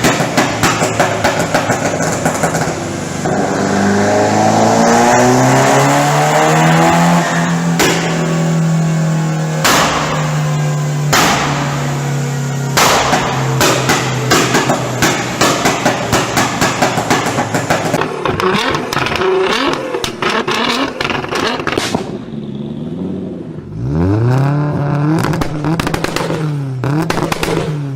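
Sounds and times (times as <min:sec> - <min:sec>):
car engine revving: 0:00.0 - 0:27.9
car exhaust popping and crackling: 0:00.0 - 0:27.9
loud exhaust bangs: 0:00.0 - 0:27.9.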